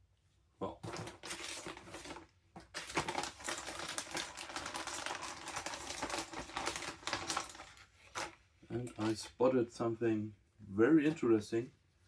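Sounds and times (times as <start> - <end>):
plastic bags crackling and rustling: 0.8 - 9.2.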